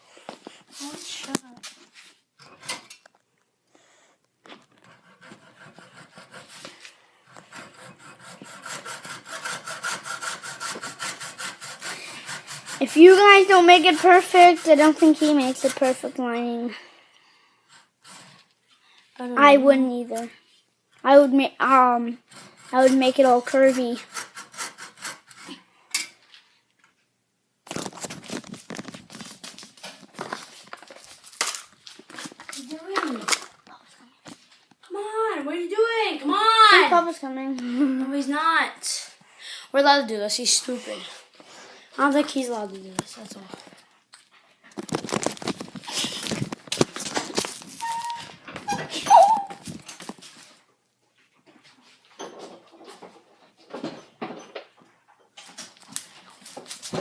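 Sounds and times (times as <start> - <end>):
hand saw cutting: 4.8 - 16.1, 17.7 - 18.5, 22.3 - 25.6
scratching and rustling: 27.7 - 34.7, 42.4 - 50.6.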